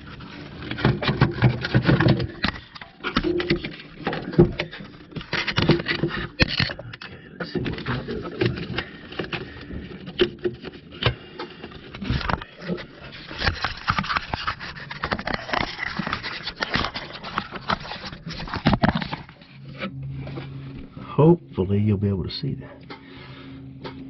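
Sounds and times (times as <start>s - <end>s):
camera handling rustling and clicks: 8.4s - 20.5s.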